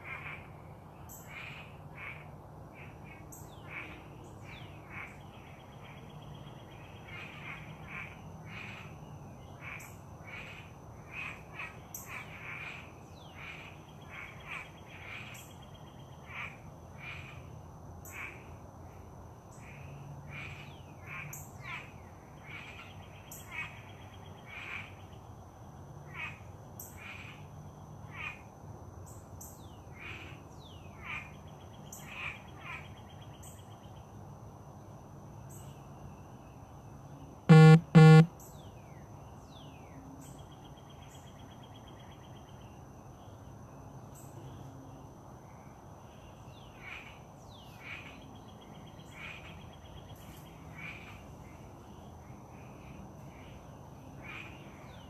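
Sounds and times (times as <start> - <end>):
birds chirping: 37.5 - 38.3
loud honking notes: 37.5 - 38.3
steady high buzz: 37.5 - 38.3.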